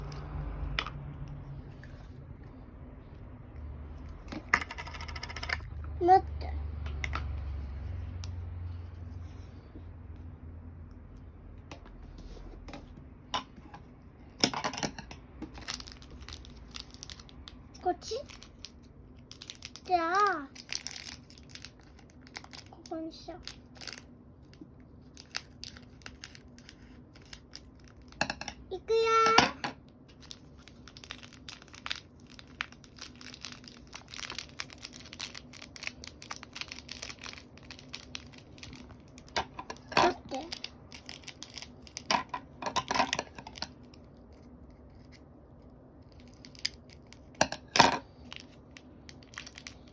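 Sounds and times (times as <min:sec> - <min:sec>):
small objects clicking and tapping: 0:04.2 - 0:05.8, 0:25.2 - 0:28.6.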